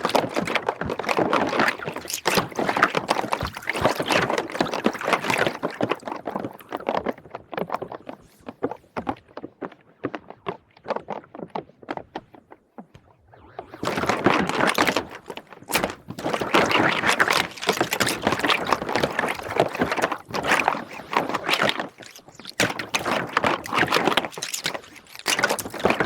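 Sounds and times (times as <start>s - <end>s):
plastic rings clattering in water: 13.8s - 26.0s.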